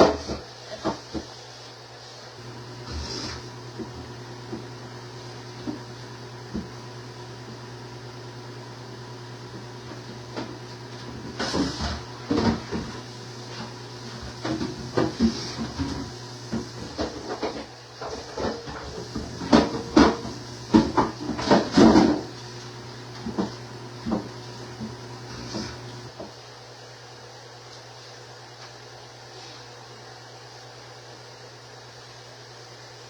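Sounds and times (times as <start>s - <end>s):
steady low hum: 2.4s - 17.4s
knocks and clatters in refrigerator: 11.2s - 13.0s, 14.2s - 22.4s.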